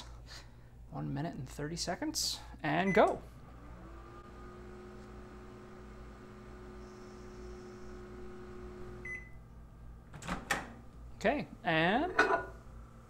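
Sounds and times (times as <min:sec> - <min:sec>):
microwave oven humming: 0:02.7 - 0:13.0.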